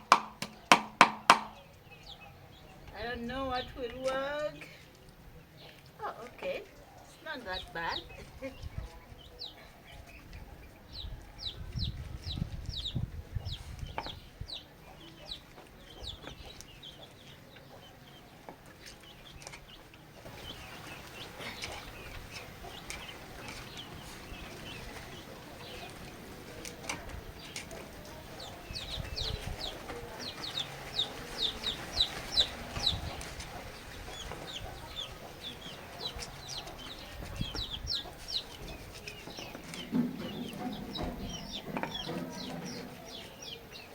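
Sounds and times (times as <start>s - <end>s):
chickens chirping: 0.0s - 43.9s
low thumps: 39.8s - 43.1s.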